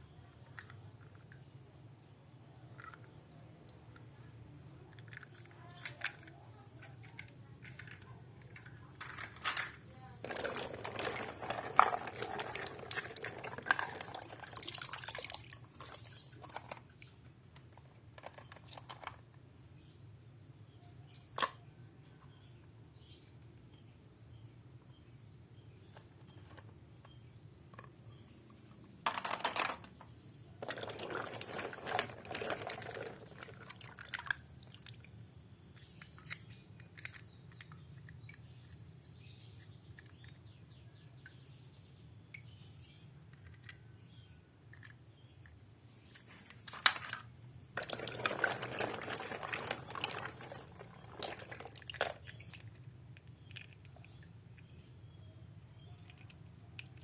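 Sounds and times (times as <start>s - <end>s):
rustling and clattering: 5.0s - 16.9s, 25.9s - 34.3s, 45.9s - 52.4s.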